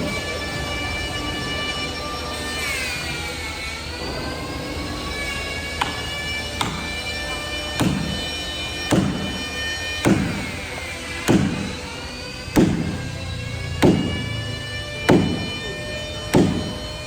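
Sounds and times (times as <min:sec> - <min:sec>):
machine motor whining: 0:04.0 - 0:17.0
sharp knocks: 0:06.6 - 0:07.2, 0:07.8 - 0:11.9, 0:12.6 - 0:17.0.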